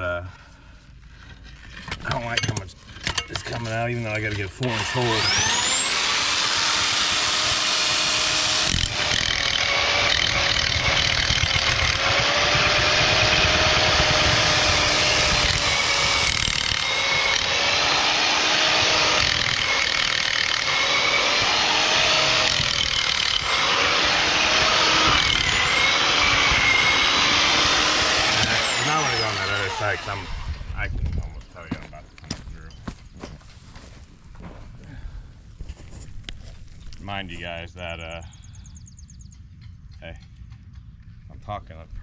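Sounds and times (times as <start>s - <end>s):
power drill boring into soil: 1.6s - 31.3s.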